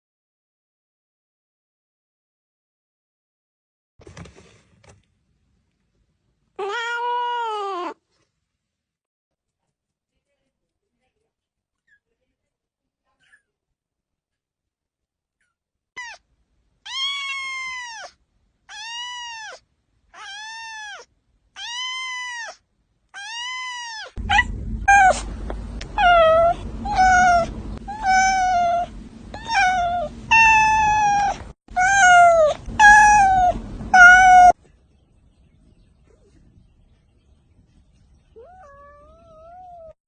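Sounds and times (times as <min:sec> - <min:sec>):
cat meowing: 0:06.6 - 0:08.0, 0:16.0 - 0:16.2, 0:16.9 - 0:19.6, 0:20.2 - 0:22.6, 0:23.2 - 0:25.2, 0:25.8 - 0:34.6, 0:38.4 - 0:40.0
low steady hum: 0:24.2 - 0:40.0.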